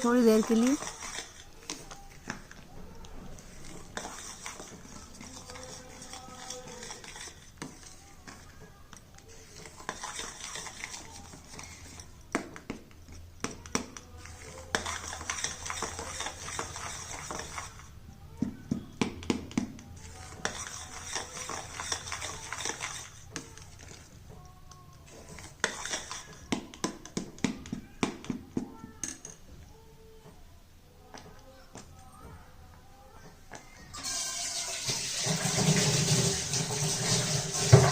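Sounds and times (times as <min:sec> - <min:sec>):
utensil scraping a pan: 0:00.4 - 0:02.5, 0:03.2 - 0:08.5, 0:09.2 - 0:12.2, 0:14.2 - 0:18.0, 0:20.0 - 0:24.1, 0:25.1 - 0:26.4, 0:33.9 - 0:37.9.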